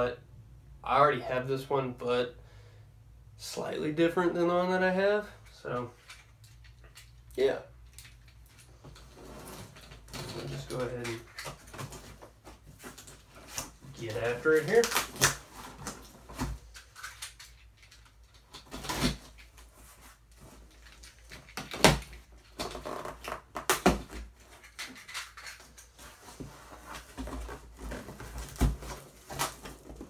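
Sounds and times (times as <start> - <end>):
cardboard box rustling and scraping: 25.9 - 30.0.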